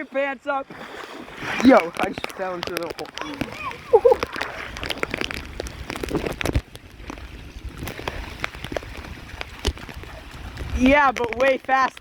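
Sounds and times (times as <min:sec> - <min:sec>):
rain drops hitting close: 0:01.6 - 0:12.0.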